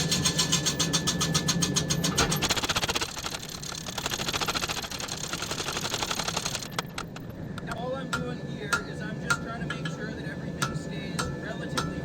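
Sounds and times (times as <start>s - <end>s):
machine hum: 2.1s - 11.8s
power hammer striking metal: 10.6s - 12.0s.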